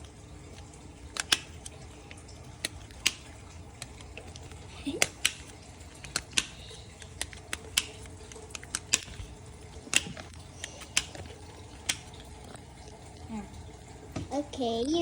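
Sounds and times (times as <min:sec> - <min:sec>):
plastic puzzle clicks: 0:00.6 - 0:12.5.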